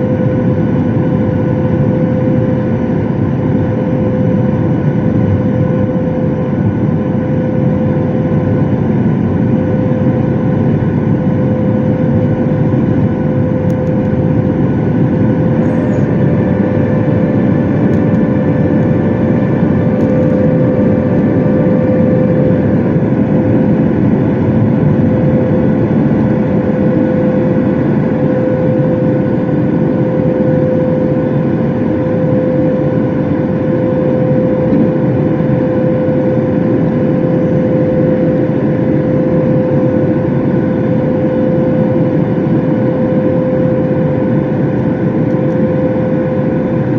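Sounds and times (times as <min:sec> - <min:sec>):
jet engine whine: 0:00.0 - 0:46.9
jet engines rushing: 0:10.6 - 0:46.9.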